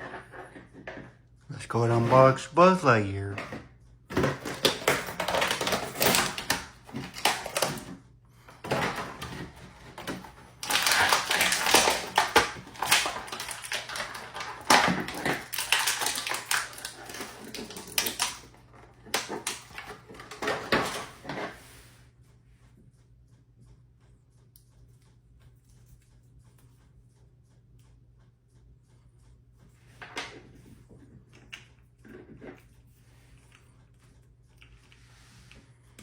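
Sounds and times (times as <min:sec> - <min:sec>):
packaging rustling and tearing: 0:04.1 - 0:07.9, 0:08.6 - 0:21.1.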